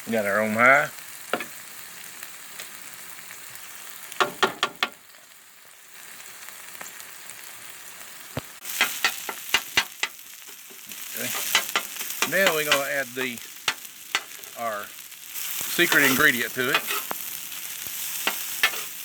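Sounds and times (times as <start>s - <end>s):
rice sizzling on a griddle: 0.0s - 19.0s
spatula tapping and scraping: 8.7s - 14.5s, 15.8s - 17.2s, 18.2s - 19.0s.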